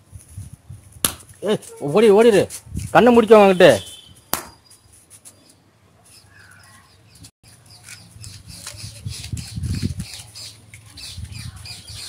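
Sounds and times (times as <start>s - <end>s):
faint bird chirps: 3.9s - 12.0s.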